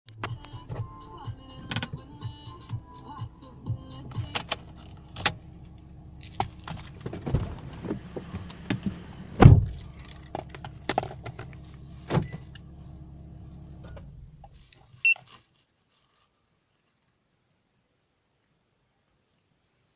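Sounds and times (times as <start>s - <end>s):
car engine running: 0.1s - 14.7s
loud thump: 9.4s - 9.8s
short electronic beep: 19.6s - 19.9s.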